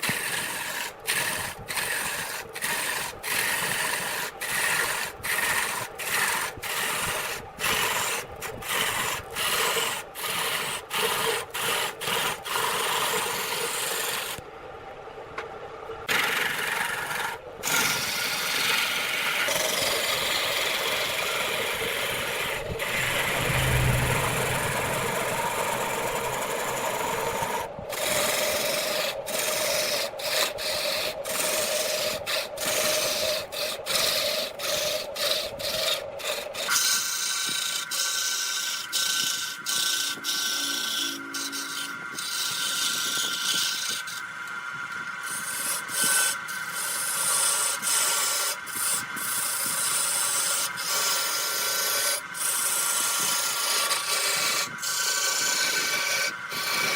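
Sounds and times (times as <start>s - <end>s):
turning tool scraping spinning wood: 0.0s - 14.4s, 16.1s - 56.9s
high-pitched hum: 22.2s - 27.8s, 40.0s - 42.2s.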